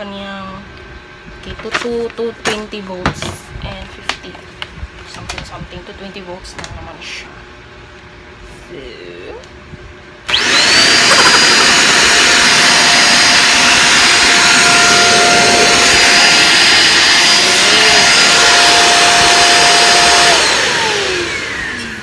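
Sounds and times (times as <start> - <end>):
vacuum cleaner motor whining: 10.3 - 22.0.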